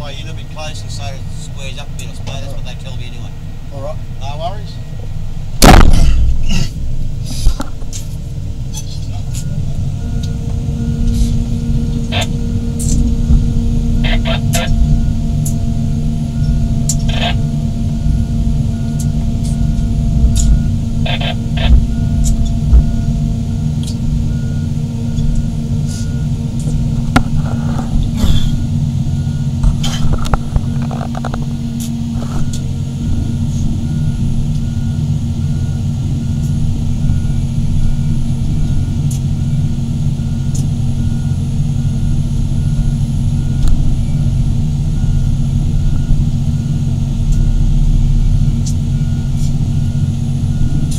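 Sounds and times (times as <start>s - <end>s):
excavator diesel engines running: 0.0s - 50.9s.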